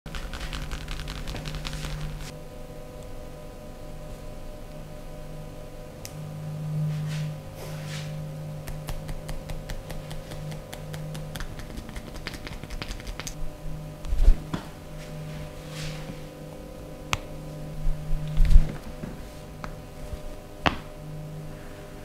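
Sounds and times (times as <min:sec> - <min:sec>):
fast sharp taps: 0:00.1 - 0:02.3, 0:08.6 - 0:13.4
steady low hum: 0:00.1 - 0:22.0.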